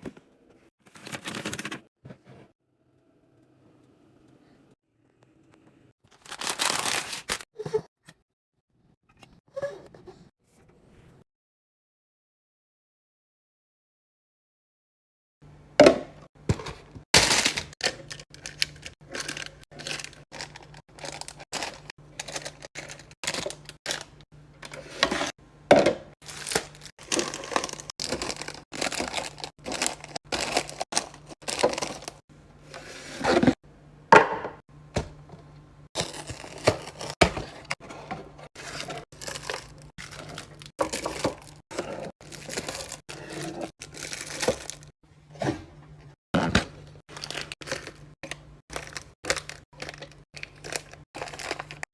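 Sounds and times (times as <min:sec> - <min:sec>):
plastic wrapper crinkling: 0:06.1 - 0:07.4, 0:17.2 - 0:24.2, 0:26.2 - 0:32.2, 0:38.6 - 0:41.6, 0:42.2 - 0:43.0, 0:43.8 - 0:44.9, 0:47.1 - 0:51.8
clicks and knocks of packages: 0:16.5 - 0:25.2, 0:25.8 - 0:32.2, 0:36.0 - 0:37.8, 0:38.6 - 0:41.6, 0:42.2 - 0:44.9, 0:46.4 - 0:51.9.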